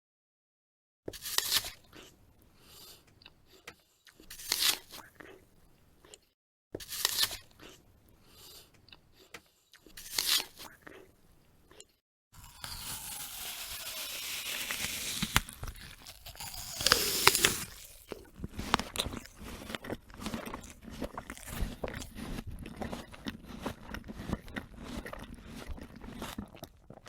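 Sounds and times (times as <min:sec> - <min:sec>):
apple bite crunch: 0:04.1 - 0:05.4, 0:09.2 - 0:11.1, 0:12.4 - 0:27.0
wet chewing: 0:11.7 - 0:27.0.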